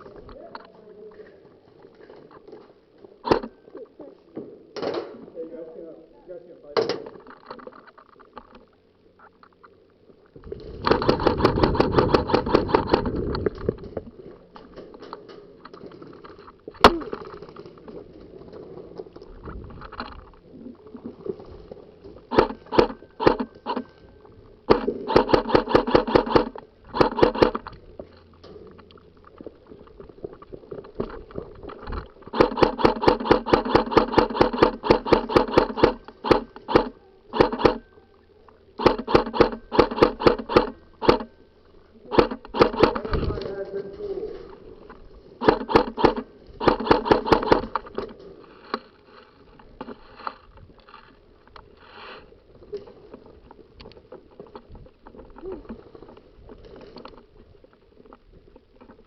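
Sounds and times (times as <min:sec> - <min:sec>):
airsoft rifle automatic bursts: 0:03.2 - 0:03.6, 0:10.8 - 0:13.3, 0:22.3 - 0:24.0, 0:24.7 - 0:27.7, 0:32.2 - 0:37.9, 0:38.8 - 0:41.4, 0:42.1 - 0:43.2, 0:45.4 - 0:48.0.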